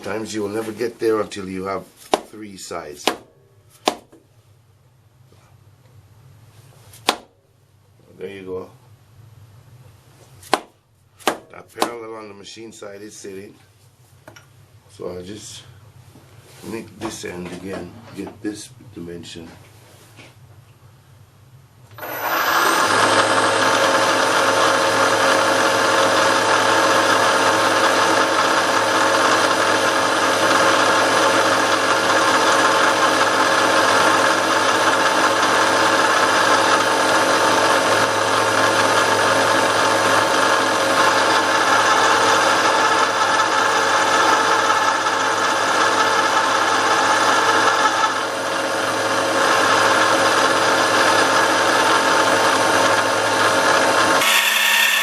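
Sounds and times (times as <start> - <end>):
milling machine cutting metal: 22.0 - 55.0.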